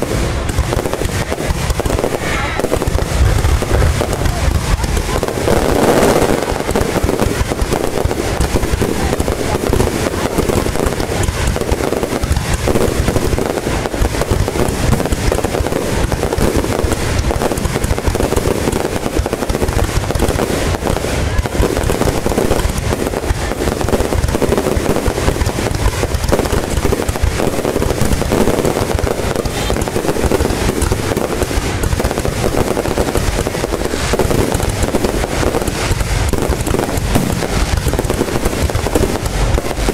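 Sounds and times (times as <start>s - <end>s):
fireworks bangs and crackle: 0.0s - 39.9s.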